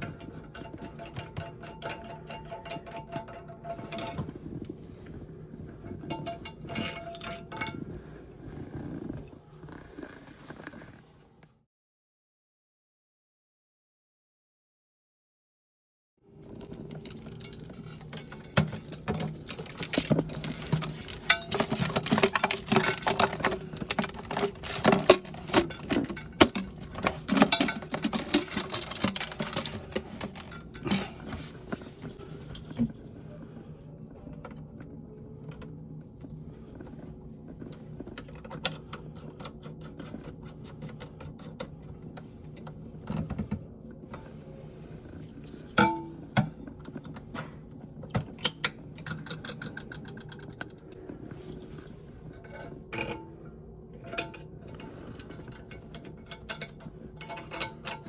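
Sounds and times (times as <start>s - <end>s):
hard parts clicking and rattling: 16.4s - 32.0s, 45.8s - 51.2s.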